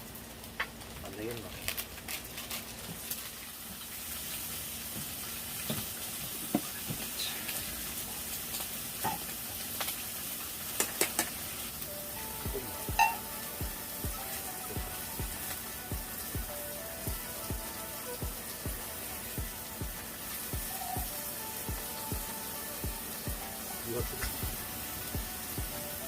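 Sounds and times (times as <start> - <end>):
meat sizzling in a pan: 0.0 - 26.0
utensils tapping a pan: 10.8 - 11.5, 12.5 - 13.4.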